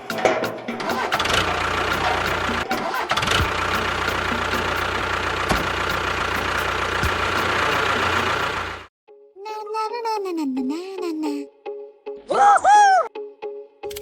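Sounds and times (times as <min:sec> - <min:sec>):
small motor humming and whining: 0:01.2 - 0:08.9.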